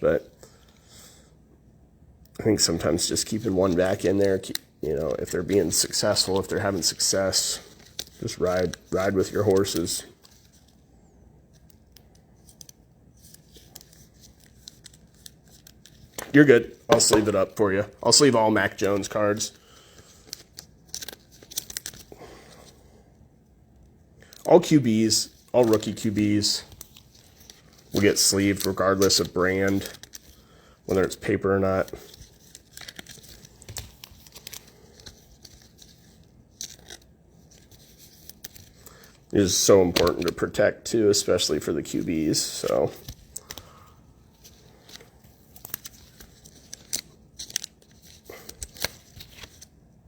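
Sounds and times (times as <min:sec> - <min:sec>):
plastic sleeve crinkling: 0:02.5 - 0:10.8, 0:11.5 - 0:22.8, 0:24.2 - 0:49.8
trading cards clicking and scraping: 0:02.9 - 0:10.8, 0:11.5 - 0:22.8, 0:24.2 - 0:40.6, 0:41.9 - 0:49.7
card clicks and scrapes: 0:31.8 - 0:39.1, 0:44.3 - 0:49.7.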